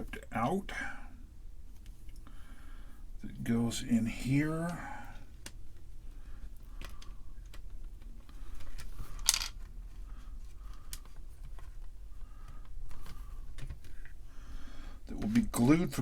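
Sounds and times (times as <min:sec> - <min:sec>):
plastic parts clicking and tapping: 0:06.7 - 0:10.0, 0:10.7 - 0:14.2.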